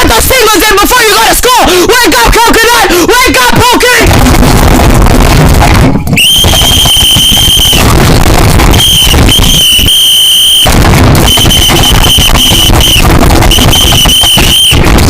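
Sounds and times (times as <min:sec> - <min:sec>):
harsh clipped noise: 0:04.0 - 0:15.0
distorted high-pitched electronic tone: 0:04.1 - 0:15.0.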